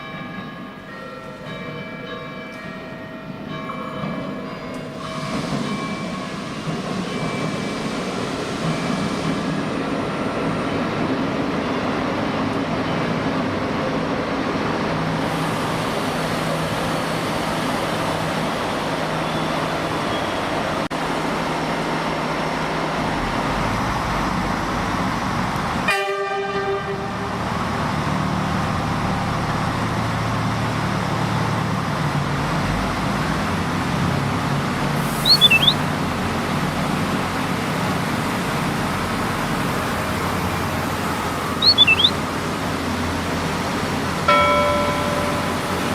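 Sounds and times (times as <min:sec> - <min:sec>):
train rumble and hiss: 0:02.3 - 0:45.9
high squeaks: 0:35.2 - 0:35.8, 0:41.6 - 0:42.2
short pitched tone: 0:35.2 - 0:35.8, 0:41.6 - 0:42.2.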